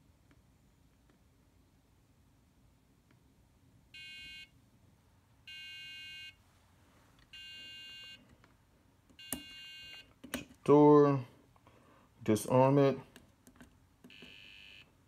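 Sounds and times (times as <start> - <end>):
buzzy electronic alarm beeps: 4.0 - 4.5, 5.5 - 6.4, 7.4 - 8.2, 9.2 - 10.1, 14.1 - 14.9.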